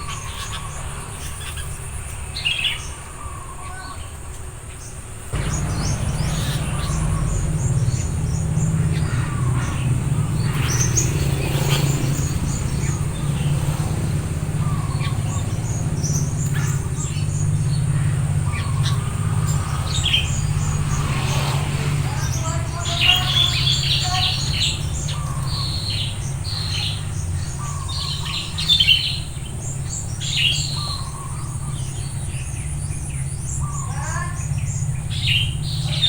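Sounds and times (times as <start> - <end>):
birds chirping: 0.0 - 36.0
steady low rumble: 5.3 - 23.8.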